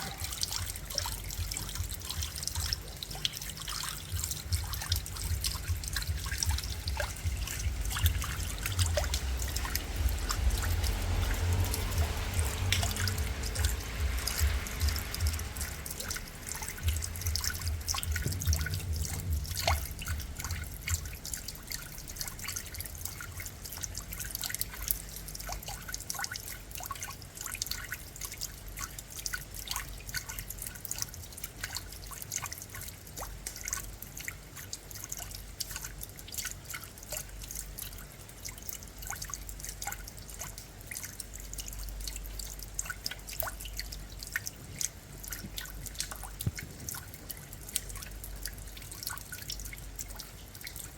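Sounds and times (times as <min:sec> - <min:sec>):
low rumble: 0:00.0 - 0:23.4
rain drops dripping and splashing: 0:00.0 - 0:50.9.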